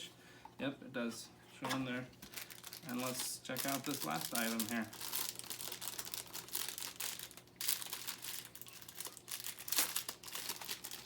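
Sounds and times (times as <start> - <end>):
plastic packaging crinkling: 2.2 - 11.0.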